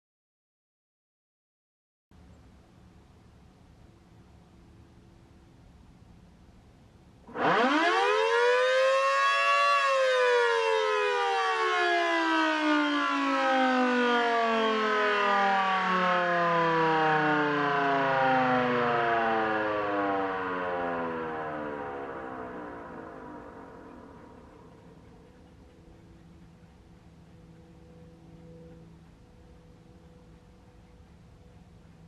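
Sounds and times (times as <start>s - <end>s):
dual-tone warning siren: 7.2s - 32.0s.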